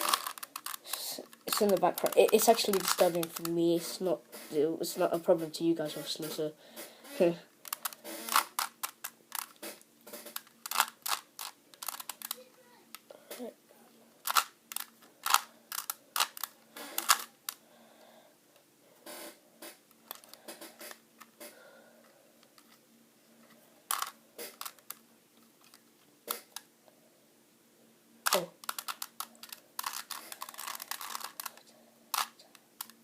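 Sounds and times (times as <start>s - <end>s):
puzzle cube plastic clicks: 0.0s - 4.1s, 7.1s - 13.1s, 14.2s - 17.6s, 20.0s - 21.4s, 23.9s - 25.0s, 28.2s - 33.0s.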